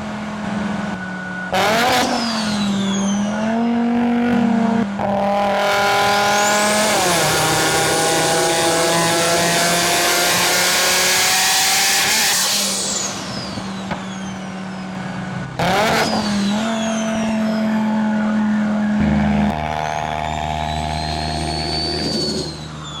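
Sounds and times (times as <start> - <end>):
car engine pulling hard: 0.0 - 23.0
turbo whistle: 1.0 - 3.6, 6.1 - 7.2, 12.0 - 14.8, 15.7 - 18.7, 19.4 - 23.0.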